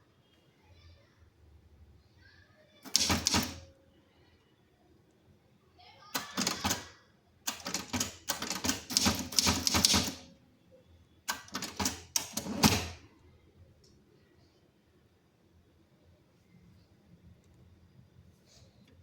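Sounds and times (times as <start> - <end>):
typewriter keys striking: 2.9 - 3.7, 6.2 - 6.9, 7.5 - 10.3, 11.3 - 13.0.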